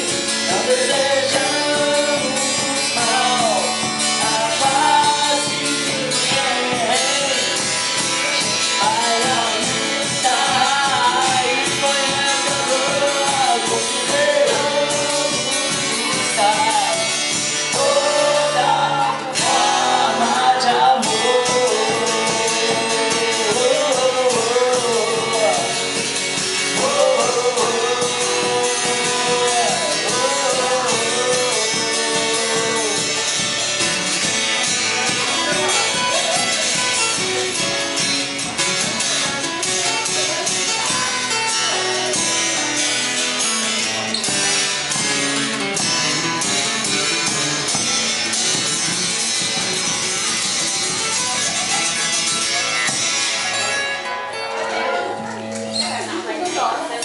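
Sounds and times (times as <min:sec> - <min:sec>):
person singing: 0:00.0 - 0:37.8
percussion: 0:00.0 - 0:57.0
strummed guitar: 0:00.0 - 0:57.0.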